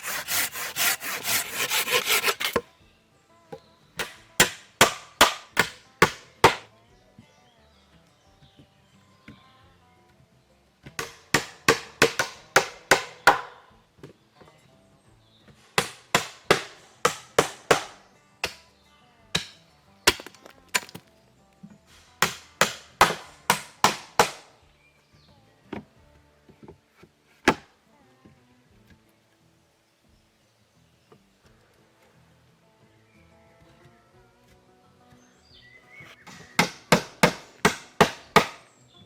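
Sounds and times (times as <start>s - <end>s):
hand tool chopping wood: 0.0s - 2.6s, 4.0s - 6.7s, 11.0s - 13.6s, 15.8s - 18.6s, 19.4s - 21.0s, 22.2s - 24.5s, 27.0s - 27.7s, 36.1s - 38.7s
faint music: 0.0s - 39.0s.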